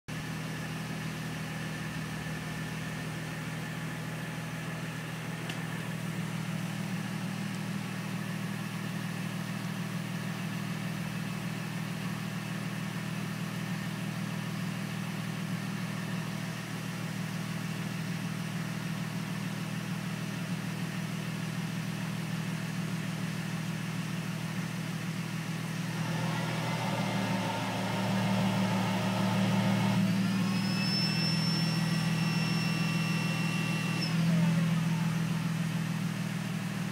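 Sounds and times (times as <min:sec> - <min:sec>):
car engine idling: 0:00.1 - 0:36.9
thin steady whine: 0:29.2 - 0:35.4.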